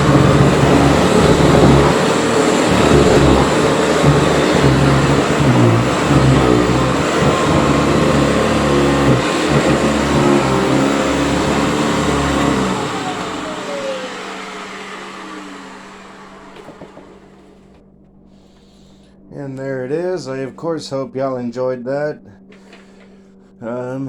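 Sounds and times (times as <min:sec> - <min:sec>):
vacuum cleaner running: 0:00.0 - 0:17.9
vacuum motor winding down: 0:00.0 - 0:17.9.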